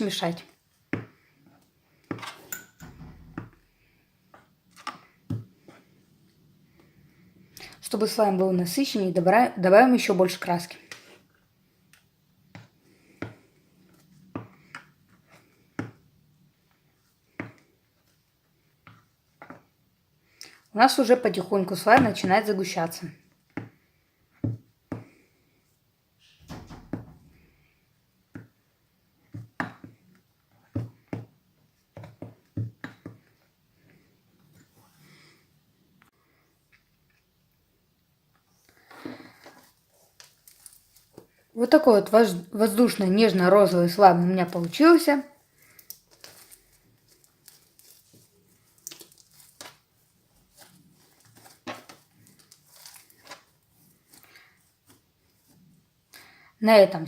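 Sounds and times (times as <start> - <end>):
slime squishing in a bowl: 43.7 - 54.2.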